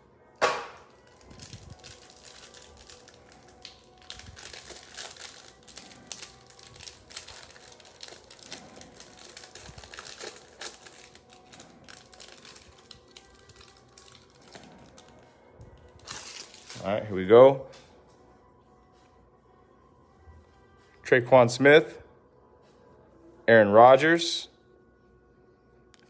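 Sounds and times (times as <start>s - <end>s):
wrappers crinkling and tearing: 0.8s - 17.1s.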